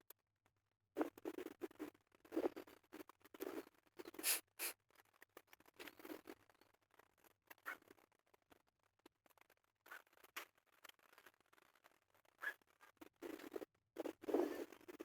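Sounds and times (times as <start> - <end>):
hissing scrapes: 4.2 - 4.7.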